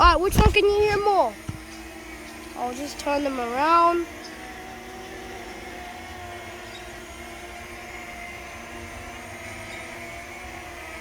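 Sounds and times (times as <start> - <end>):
drone propeller hum: 0.0 - 11.0.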